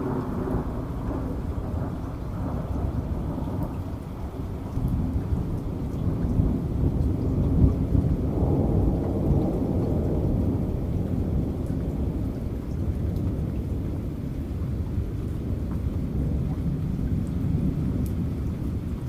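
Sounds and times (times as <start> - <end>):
thunder rumbling: 0.0 - 14.2
steady rain: 0.0 - 19.0.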